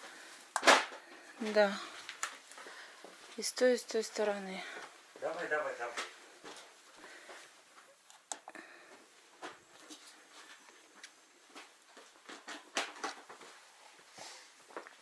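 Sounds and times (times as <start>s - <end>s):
people moving and handling things: 0.0s - 15.0s.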